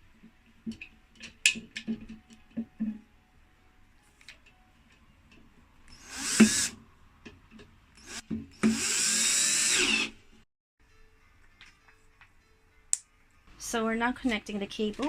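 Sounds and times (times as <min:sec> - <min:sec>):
power drill whirring: 0:05.9 - 0:06.8, 0:08.0 - 0:10.2.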